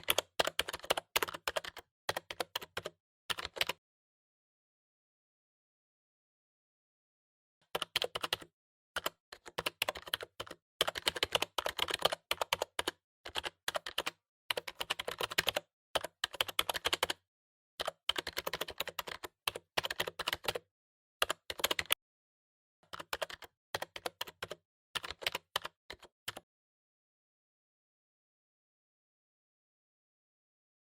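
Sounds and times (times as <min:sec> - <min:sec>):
computer keyboard typing: 0:00.0 - 0:03.8, 0:07.7 - 0:17.2, 0:17.8 - 0:22.0, 0:22.9 - 0:26.4.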